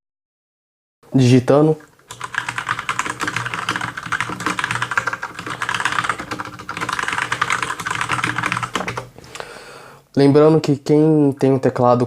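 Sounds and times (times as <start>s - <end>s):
mechanical keyboard typing: 2.0s - 9.2s.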